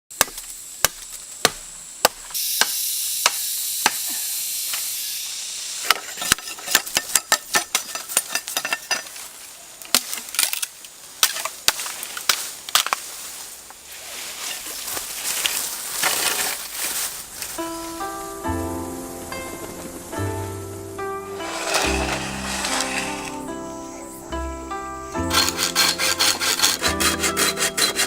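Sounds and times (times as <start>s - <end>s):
steady hiss: 0.1s - 28.0s.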